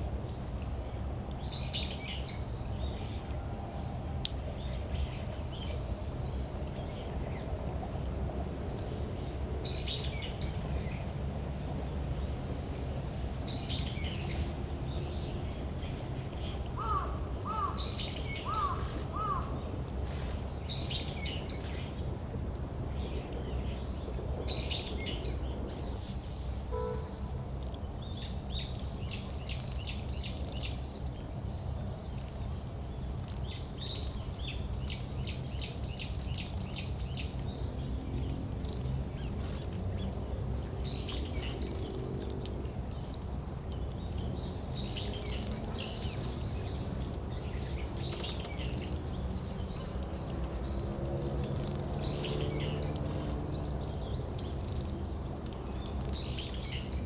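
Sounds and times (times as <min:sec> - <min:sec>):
high-pitched insect trill: 0:00.0 - 0:57.0
small birds calling: 0:16.7 - 0:19.7.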